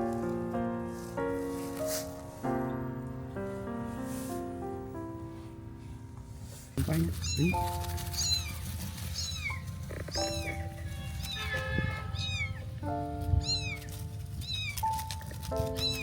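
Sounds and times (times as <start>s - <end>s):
background music: 0.0s - 16.0s
kitten meowing: 6.9s - 16.0s.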